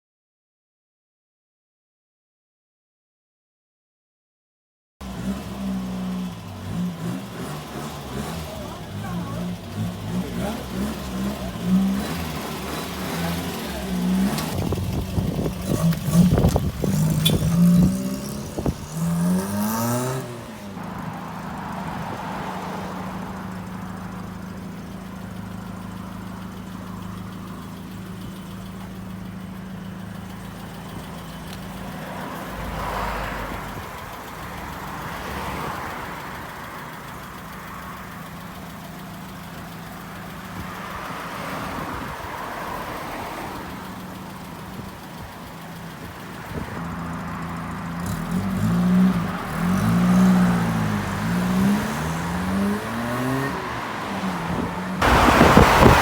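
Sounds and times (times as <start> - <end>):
car engine revving: 5.0 - 56.0.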